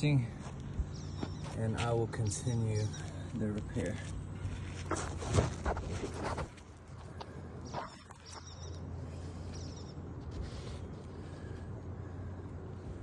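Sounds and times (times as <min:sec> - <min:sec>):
steady low hum: 0:00.0 - 0:13.0
small bird chirping: 0:00.8 - 0:03.9, 0:07.6 - 0:10.1.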